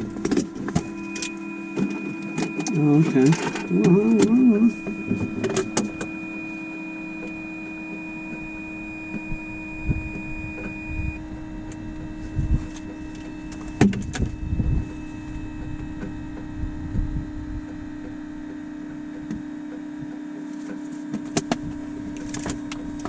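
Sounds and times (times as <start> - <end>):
aircraft engine hum: 0.0 - 23.0
thin high tone: 0.2 - 13.8.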